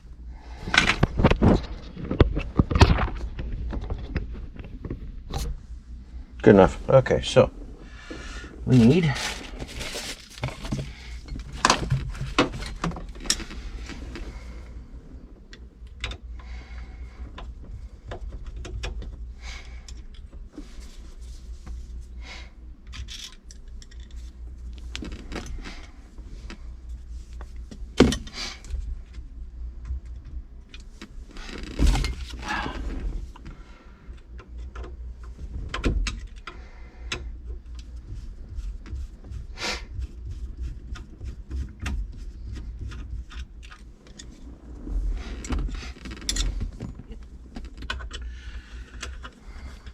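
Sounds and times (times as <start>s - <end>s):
low steady hum: 0.0s - 49.9s
metallic clicks and rattles of tools: 22.9s - 24.2s.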